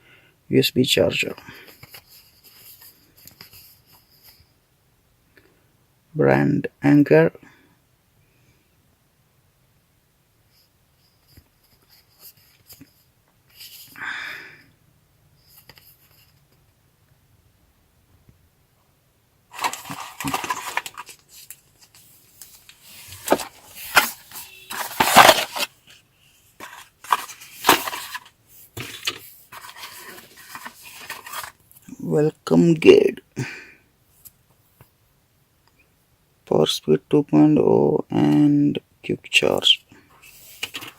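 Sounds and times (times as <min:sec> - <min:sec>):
cardboard box and plastic packaging handled: 0:19.5 - 0:31.9, 0:40.2 - 0:40.9.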